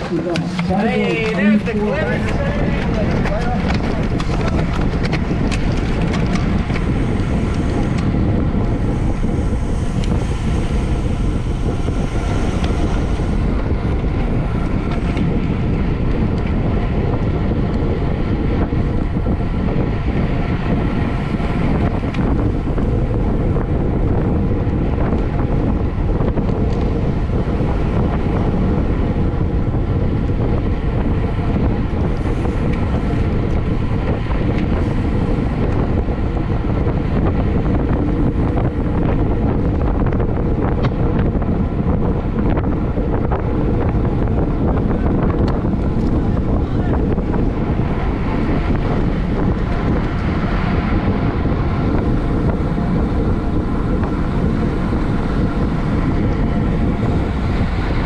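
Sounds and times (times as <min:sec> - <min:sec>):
wind rushing over microphone: 0:00.0 - 0:58.0.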